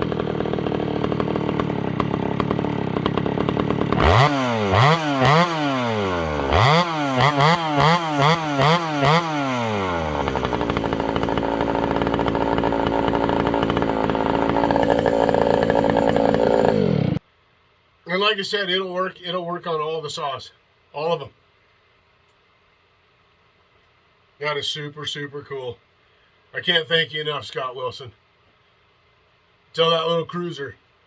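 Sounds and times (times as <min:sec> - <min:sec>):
chainsaw running and revving: 0:00.0 - 0:17.2.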